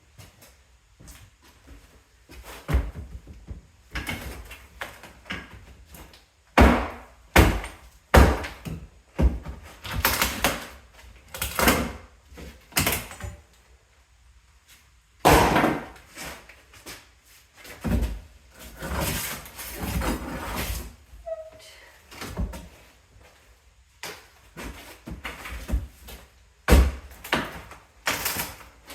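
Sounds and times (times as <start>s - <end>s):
heavy knocks on wood: 6.6s - 9.5s.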